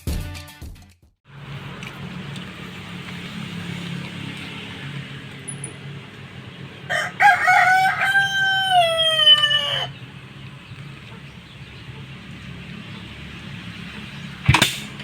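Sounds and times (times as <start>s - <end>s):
rooster crowing: 6.7s - 10.4s.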